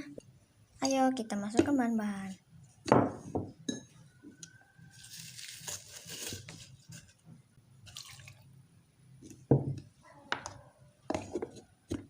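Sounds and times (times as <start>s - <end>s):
herb leaves rustling: 4.9s - 7.1s.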